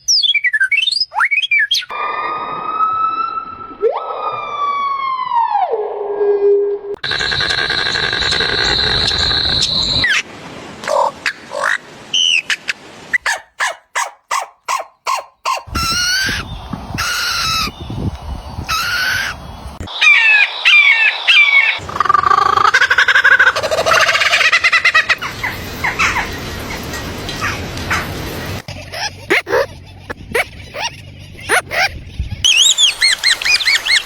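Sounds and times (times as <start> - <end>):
rapid ticking call: 13.2 - 15.8, 29.0 - 30.9
animal calls: 13.2 - 17.8, 18.7 - 26.4, 27.9 - 34.0.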